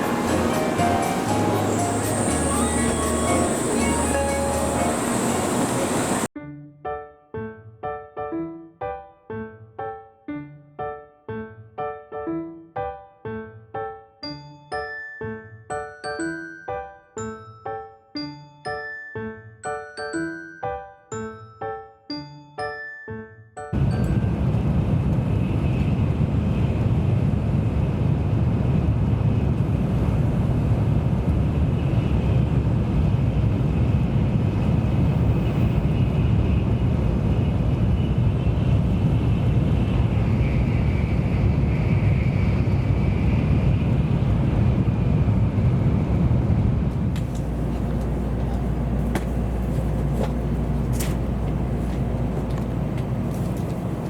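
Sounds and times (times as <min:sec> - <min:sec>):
faint high whine: 0:00.0 - 0:06.3
train rumbling: 0:00.0 - 0:06.3, 0:23.8 - 0:54.0.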